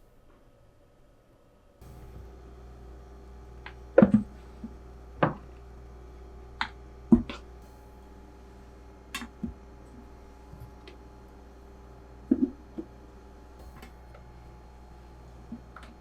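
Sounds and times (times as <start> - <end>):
steady low hum: 1.8 - 16.0.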